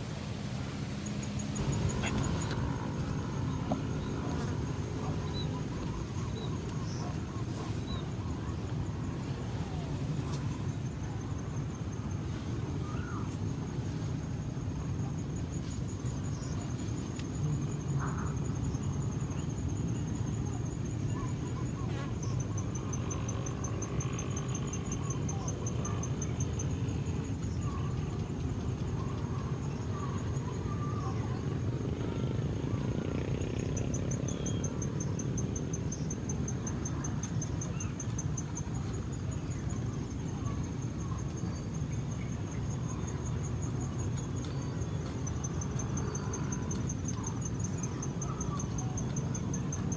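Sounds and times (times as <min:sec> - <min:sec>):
low outdoor rumble: 0:00.0 - 0:13.2
insect chirping: 0:00.1 - 0:14.1, 0:14.7 - 0:49.9
low rumble: 0:01.0 - 0:05.1
birds calling: 0:01.1 - 0:07.6.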